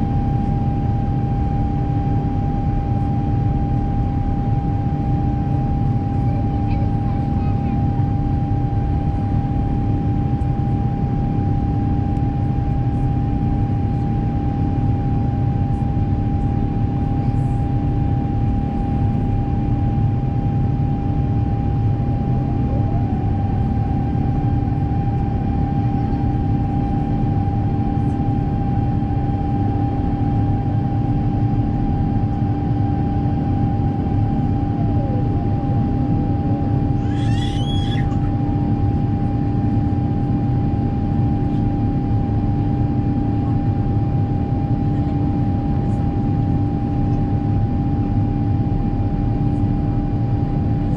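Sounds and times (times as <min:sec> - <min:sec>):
airplane cabin engine noise: 0:00.0 - 0:50.9.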